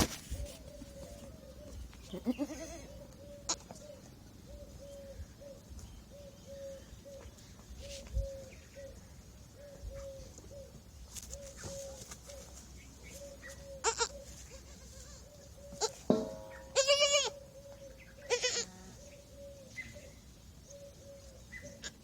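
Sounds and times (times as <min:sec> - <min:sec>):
goat kid bleating: 0:02.1 - 0:02.9, 0:03.5 - 0:03.7, 0:13.8 - 0:16.0, 0:16.7 - 0:17.4, 0:18.3 - 0:18.9.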